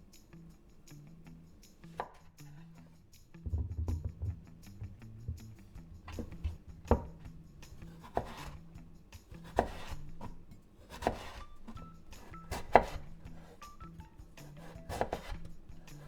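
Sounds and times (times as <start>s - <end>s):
soft background music: 3.5s - 16.0s
knife chopping on wooden board: 6.0s - 7.2s, 7.8s - 8.6s, 9.4s - 13.8s, 14.4s - 16.0s.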